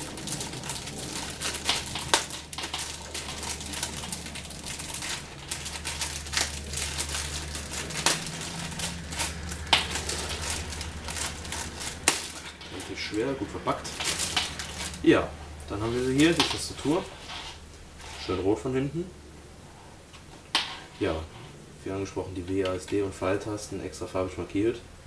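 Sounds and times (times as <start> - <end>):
sharp clicks and rustles: 0.0 - 18.3
plastic wrapping crinkling: 0.0 - 18.5.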